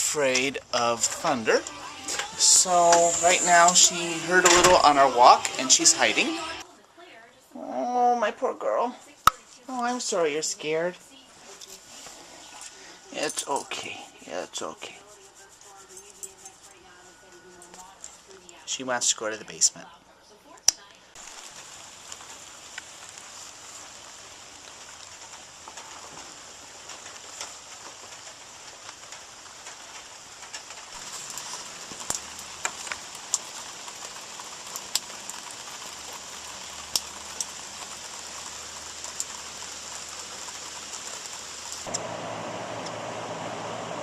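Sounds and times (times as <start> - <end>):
rain falling: 0.0 - 19.3, 20.9 - 44.0
sharp drips ticking: 20.7 - 42.0.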